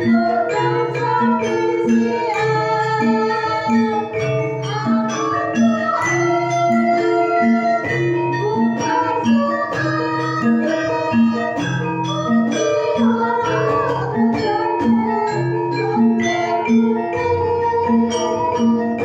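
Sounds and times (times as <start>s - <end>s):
gamelan ensemble playing: 0.0s - 19.0s.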